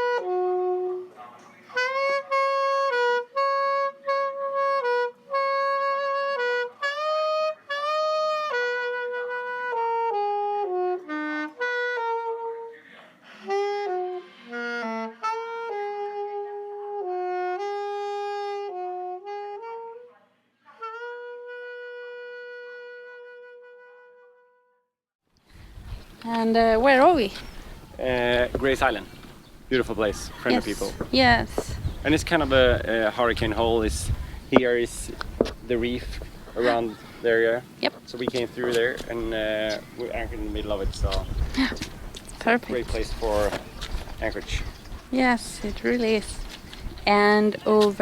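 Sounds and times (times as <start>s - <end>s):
wind instrument melody: 0.0s - 24.7s, 25.7s - 48.0s.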